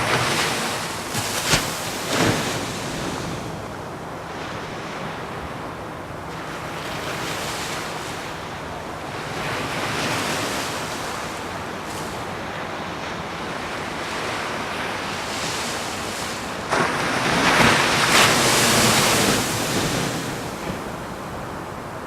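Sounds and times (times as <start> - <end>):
wave breaking: 0.0 - 3.6, 15.3 - 21.2
ocean surf washing: 0.0 - 22.0.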